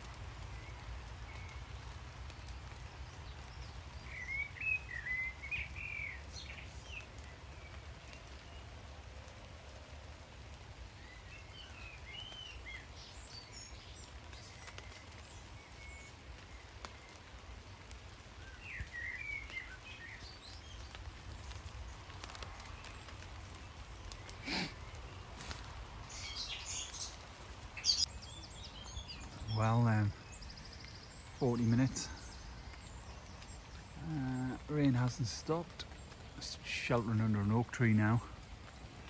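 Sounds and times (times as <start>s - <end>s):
songbird singing: 0.0s - 8.7s, 10.8s - 39.0s
rain falling on woodland: 0.0s - 39.0s.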